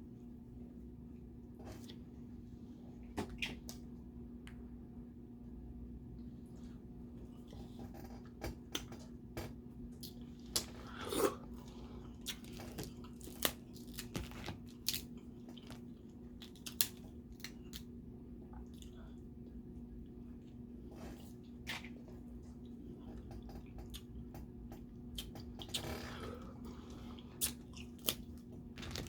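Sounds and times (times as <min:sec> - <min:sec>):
faint steady hum: 0:00.0 - 0:29.0
chewing: 0:10.0 - 0:17.9, 0:25.2 - 0:29.0.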